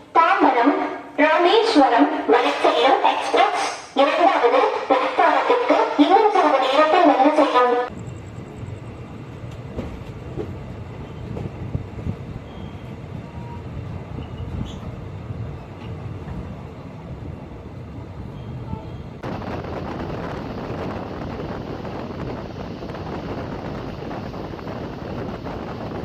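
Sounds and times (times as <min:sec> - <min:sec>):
train rumbling on rails: 0:00.0 - 0:26.0
wind on microphone: 0:16.2 - 0:26.0.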